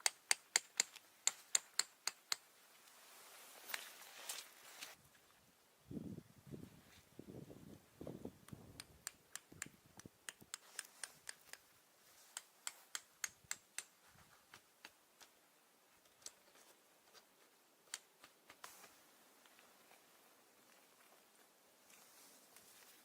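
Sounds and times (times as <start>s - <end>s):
faint sharp clicks: 8.4s - 11.7s, 12.3s - 13.9s.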